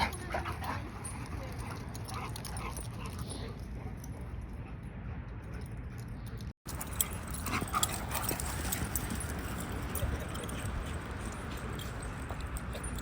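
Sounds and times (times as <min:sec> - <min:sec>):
dogs scuffling: 0:06.7 - 0:13.0.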